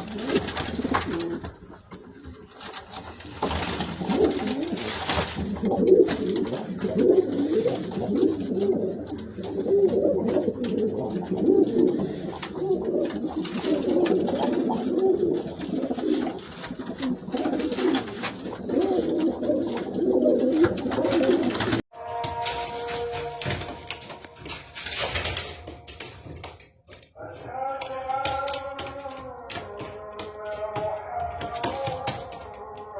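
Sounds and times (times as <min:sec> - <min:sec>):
pigeons cooing: 0:00.0 - 0:21.8.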